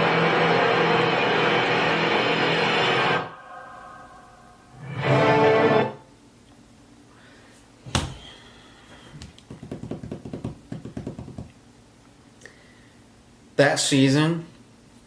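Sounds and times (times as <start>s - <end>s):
soft tapping and handling noise: 9.1s - 11.6s.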